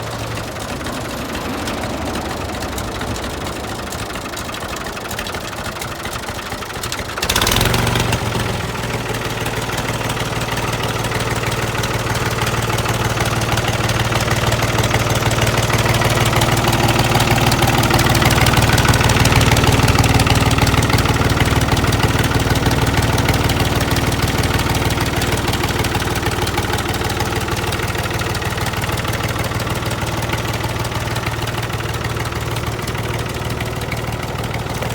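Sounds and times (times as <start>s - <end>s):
loud engine burst: 0.0s - 21.8s
tractor diesel engine running: 0.0s - 34.9s.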